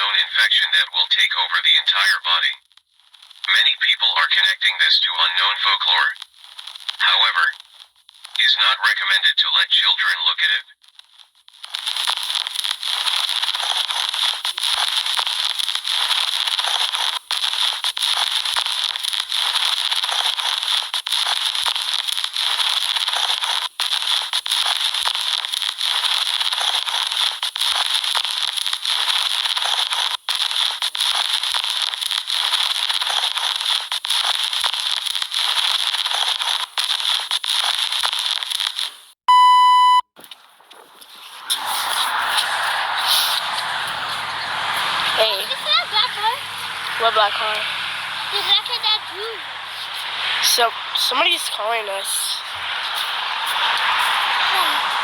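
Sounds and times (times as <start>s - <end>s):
crackling hissing static: 0.0s - 55.0s
loud buzzy beep: 39.3s - 40.1s.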